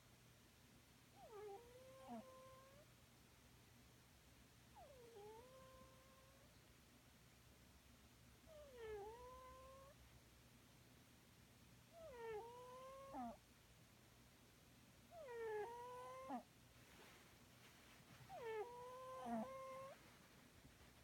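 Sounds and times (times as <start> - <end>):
cat snoring with whining breaths: 1.2 - 2.8, 4.8 - 6.4, 8.5 - 10.0, 11.9 - 13.4, 15.1 - 16.5, 18.3 - 20.0.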